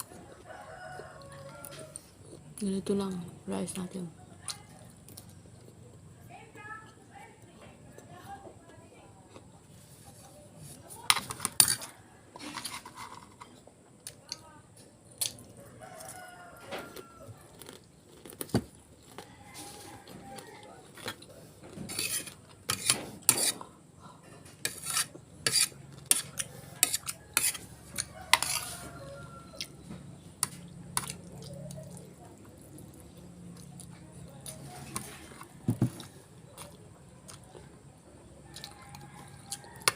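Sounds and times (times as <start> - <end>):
cutlery scraping a plate: 11.1 - 13.6, 21.7 - 29.0.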